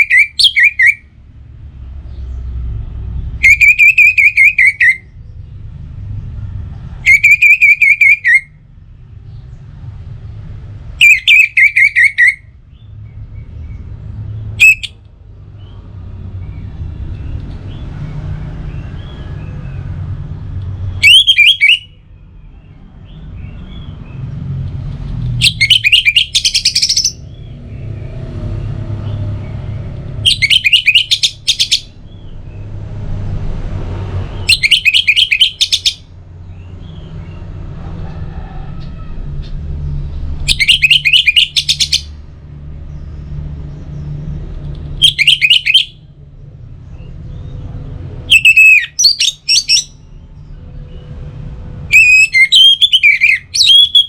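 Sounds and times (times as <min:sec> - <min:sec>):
thrush singing: 0:03.4 - 0:05.1, 0:07.0 - 0:08.5, 0:21.0 - 0:22.0, 0:25.4 - 0:32.2, 0:34.2 - 0:36.1, 0:40.4 - 0:42.1, 0:51.9 - 0:54.0
steady low rumble: 0:05.0 - 0:07.3, 0:22.0 - 0:34.7.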